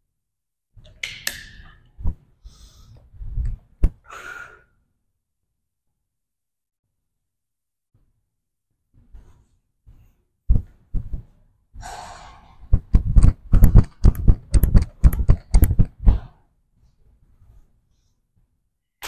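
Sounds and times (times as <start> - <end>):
man breathing hard: 2.4 - 3.1, 4.0 - 4.8, 11.8 - 12.7.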